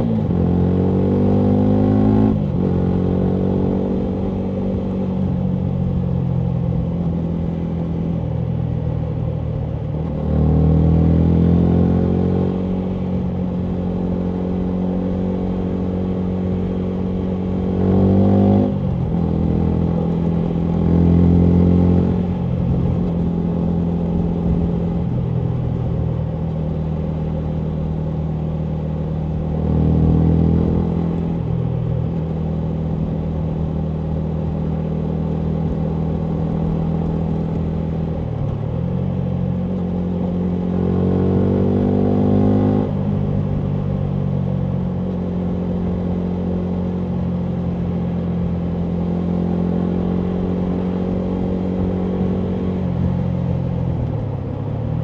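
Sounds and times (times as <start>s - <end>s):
motorcycle engine revving: 39.0s - 44.0s.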